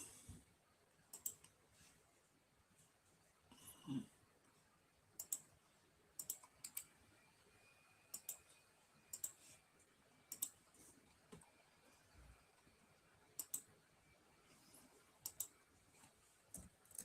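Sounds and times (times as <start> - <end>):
computer mouse clicking: 1.1 - 1.6, 5.2 - 5.5, 6.2 - 7.0, 8.1 - 8.5, 9.1 - 9.4, 10.3 - 10.6, 13.4 - 13.7, 15.2 - 15.6, 16.5 - 17.0.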